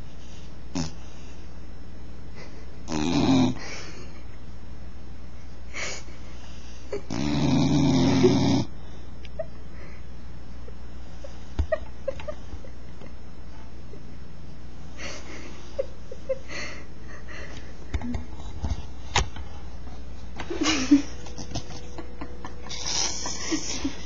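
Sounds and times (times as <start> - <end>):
steady low hum: 0.0 - 24.0
dog snoring: 0.7 - 1.2, 2.9 - 3.7, 7.1 - 8.7, 22.7 - 24.0.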